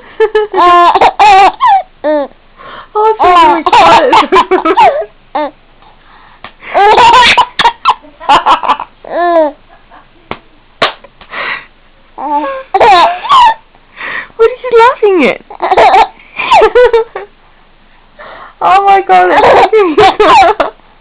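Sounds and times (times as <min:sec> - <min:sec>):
baby giggling: 0:00.4 - 0:02.3, 0:03.2 - 0:05.5, 0:06.7 - 0:09.6, 0:12.2 - 0:13.6, 0:15.5 - 0:17.0, 0:19.3 - 0:20.7.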